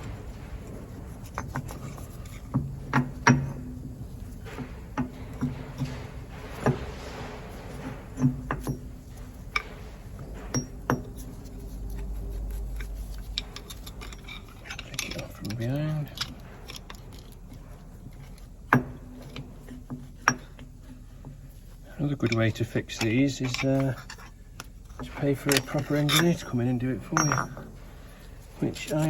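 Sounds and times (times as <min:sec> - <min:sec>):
screwdriver clinking on metal: 0:13.2 - 0:18.5, 0:22.2 - 0:27.8.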